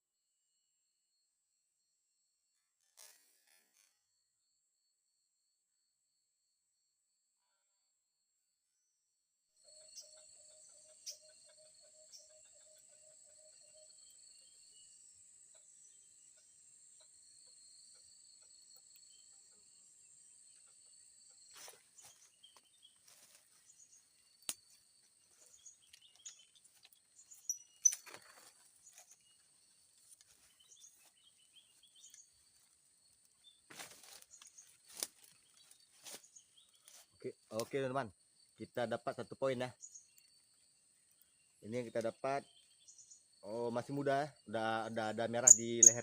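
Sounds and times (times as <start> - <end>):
crickets chirring: 15.8 - 46.0.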